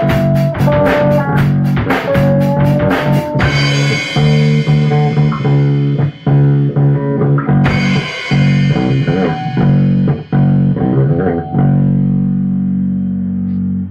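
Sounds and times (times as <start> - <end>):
rock band playing live: 0.0 - 12.2
cymbal crash: 3.4 - 6.9, 7.6 - 10.8.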